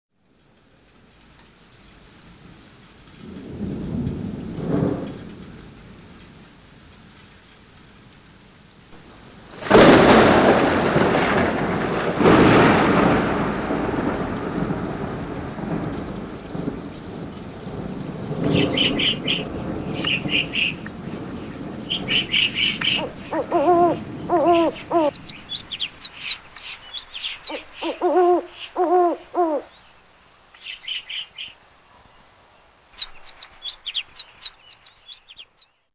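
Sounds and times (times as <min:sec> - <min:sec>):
steady rain: 0:00.1 - 0:35.9
thunder claps: 0:02.4 - 0:29.6
high bird chirps: 0:18.5 - 0:20.8, 0:21.9 - 0:30.0, 0:30.6 - 0:31.6, 0:33.0 - 0:35.8
low hooting bird calls: 0:18.5 - 0:20.8, 0:21.9 - 0:31.6.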